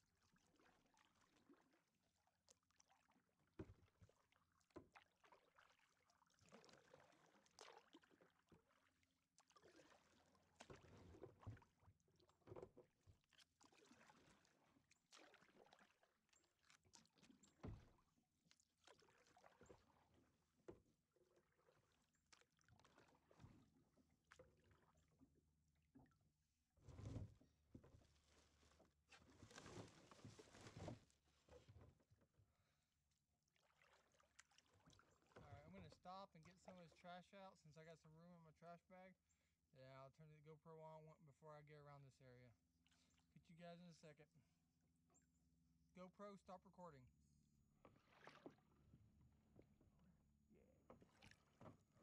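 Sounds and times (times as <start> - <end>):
paddle strokes splashing: 0.0 - 25.4, 26.8 - 32.6, 33.5 - 37.2, 47.8 - 50.1, 50.8 - 52.0.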